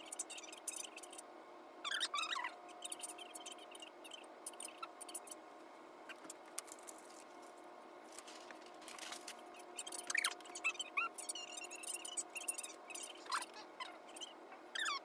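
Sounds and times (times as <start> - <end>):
sped-up voices squeaky chirps: 0.0 - 1.2, 1.8 - 5.4, 9.5 - 15.0
faint steady hum: 0.0 - 15.0.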